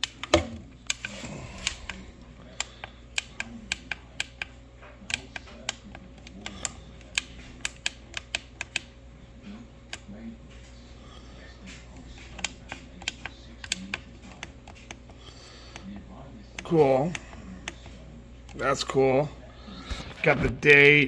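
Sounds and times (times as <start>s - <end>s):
plastic clock clicks and taps: 5.1s - 8.9s, 12.2s - 15.0s.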